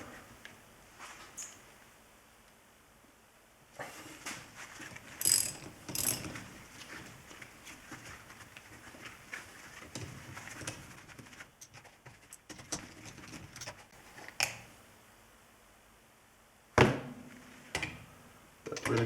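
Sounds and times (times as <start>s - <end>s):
metallic clicks of hand tools: 5.2s - 6.3s.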